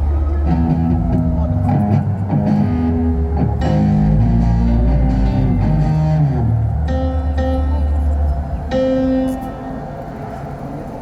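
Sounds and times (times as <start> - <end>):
bass guitar: 0.0 - 8.6
electric guitar chords: 0.0 - 10.0.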